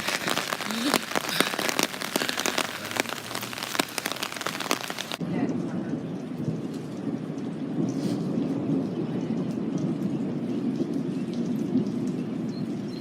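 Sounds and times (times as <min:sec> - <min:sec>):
heavy rain with drop hits: 0:00.0 - 0:13.0.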